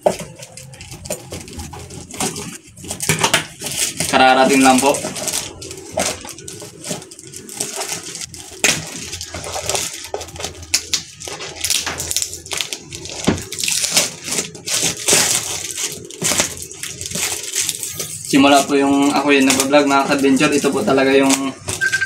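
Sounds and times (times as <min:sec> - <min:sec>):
plastic packaging crinkling and tearing: 0:00.0 - 0:21.8.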